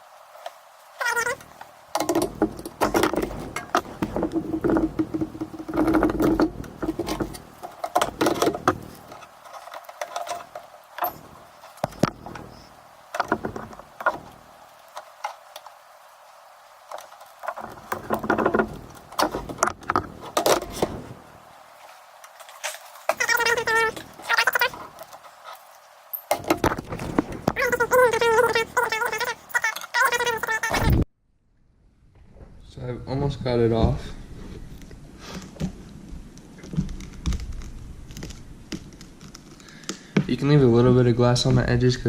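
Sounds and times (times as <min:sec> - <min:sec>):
plastic tools scraping under glass: 0:01.0 - 0:15.1, 0:17.0 - 0:21.3, 0:22.4 - 0:25.7.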